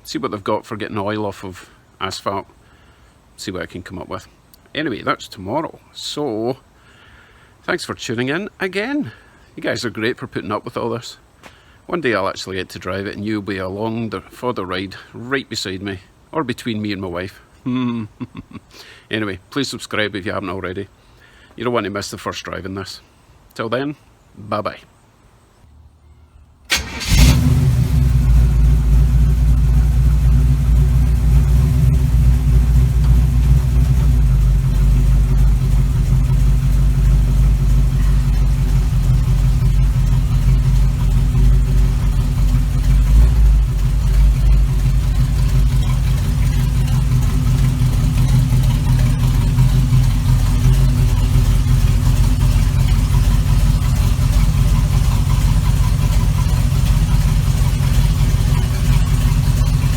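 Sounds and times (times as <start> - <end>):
car engine starting and idling: 26.7 - 59.9.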